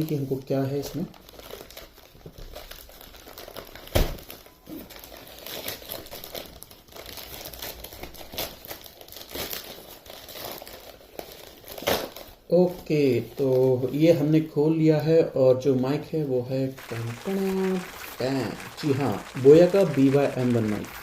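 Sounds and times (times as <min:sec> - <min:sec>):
packaging crinkling and rustling: 0:00.9 - 0:12.4.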